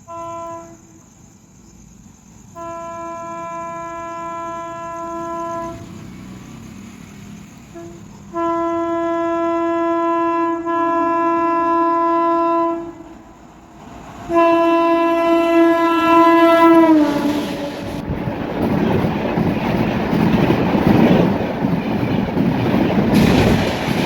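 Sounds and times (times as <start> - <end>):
train horn blasts: 0.0 - 1.0, 2.5 - 6.0, 7.7 - 13.2, 14.3 - 18.2
train wheels clattering on rails: 12.9 - 24.0.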